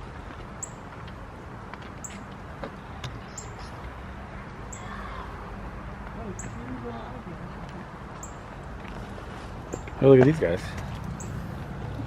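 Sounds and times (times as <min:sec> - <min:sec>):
low background noise: 0:00.0 - 0:12.0
small bird chirping: 0:03.2 - 0:03.8.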